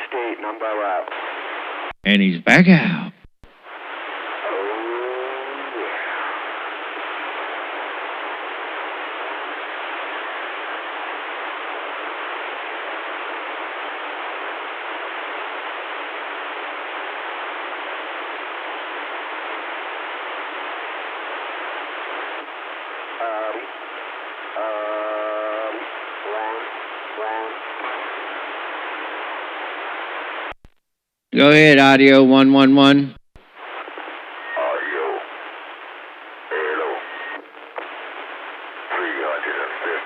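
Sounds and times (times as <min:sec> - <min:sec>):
faint warbling radio voices: 0:00.0 - 0:01.2, 0:04.4 - 0:07.0, 0:23.2 - 0:23.8, 0:24.5 - 0:28.1, 0:34.4 - 0:35.4, 0:36.4 - 0:40.0
radio static hiss: 0:00.0 - 0:40.0.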